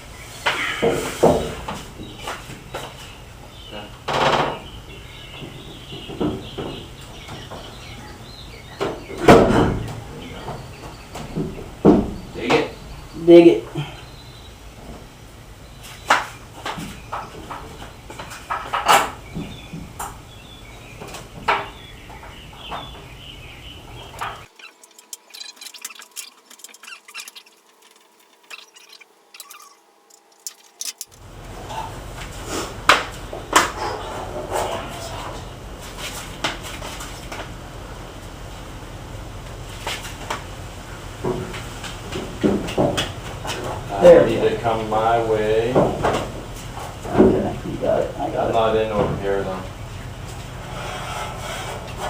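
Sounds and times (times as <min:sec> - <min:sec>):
birds chirping: 0:02.0 - 0:14.6, 0:19.2 - 0:31.5.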